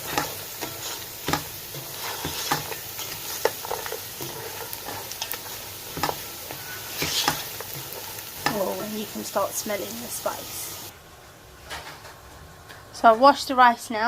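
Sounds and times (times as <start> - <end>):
food sizzling in oil: 0.0 - 10.9.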